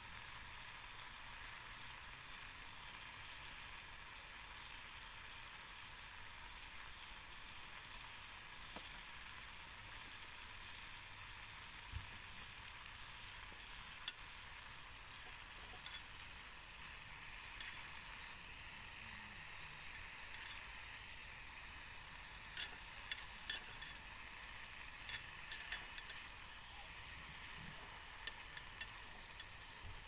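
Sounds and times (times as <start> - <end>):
food sizzling in a pan: 0.0 - 30.0
utensil clinking against pan: 25.1 - 26.2.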